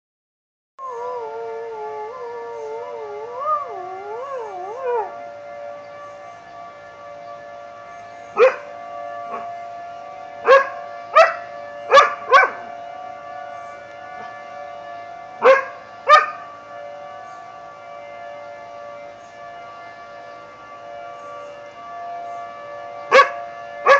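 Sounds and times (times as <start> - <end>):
tornado siren: 0.8 - 23.9
dog barking: 8.4 - 8.6, 10.5 - 12.6, 15.4 - 16.4, 23.1 - 23.9.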